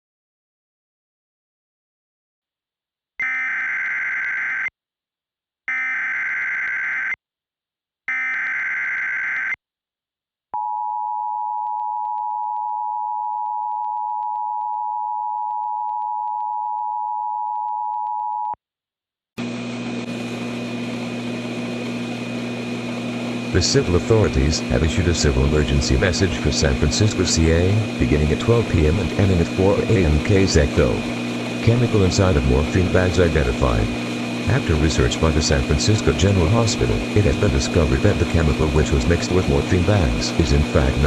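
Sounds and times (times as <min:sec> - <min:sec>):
low hum: 0:19.4 - 0:41.0.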